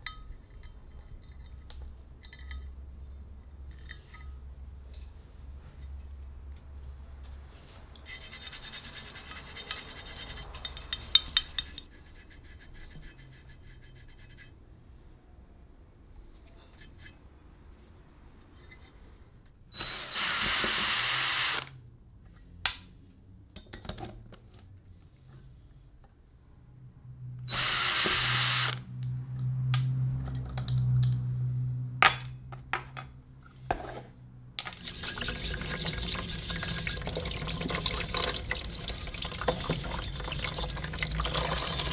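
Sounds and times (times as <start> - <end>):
power drill running: 19.8 - 21.7, 27.5 - 28.8.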